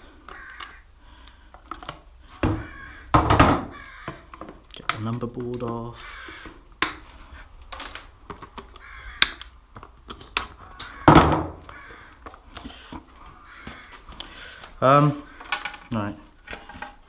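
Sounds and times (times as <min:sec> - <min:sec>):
hand tools clicking and knocking: 0:15.4 - 0:17.0.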